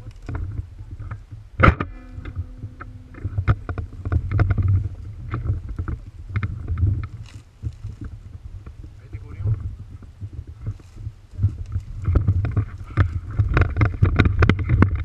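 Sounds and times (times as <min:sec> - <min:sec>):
scattered knocks and clicks: 0:00.0 - 0:15.0
steady low rumble: 0:00.0 - 0:15.0
sharp ringing knock: 0:01.6 - 0:04.5.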